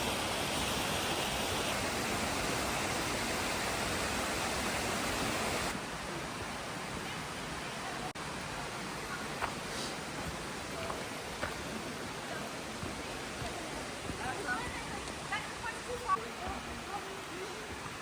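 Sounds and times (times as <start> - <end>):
waterfall rushing: 0.0 - 18.0.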